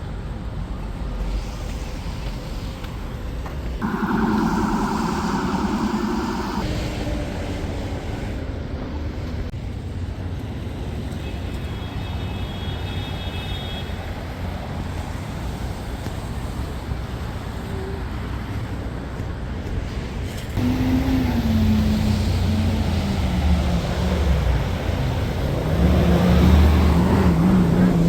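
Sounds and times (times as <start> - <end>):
road traffic going by: 3.8 - 6.8, 20.6 - 28.0.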